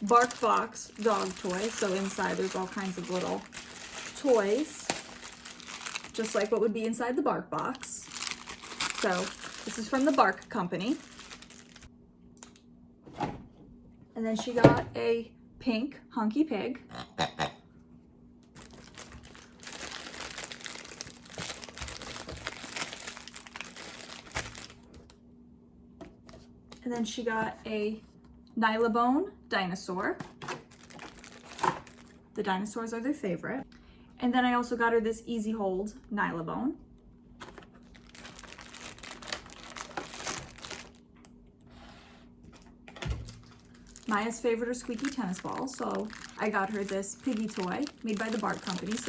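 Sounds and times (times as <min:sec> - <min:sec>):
crinkly packaging rustling: 0:00.0 - 0:11.9, 0:18.4 - 0:25.2, 0:30.2 - 0:32.2, 0:37.4 - 0:41.1, 0:42.5 - 0:49.0.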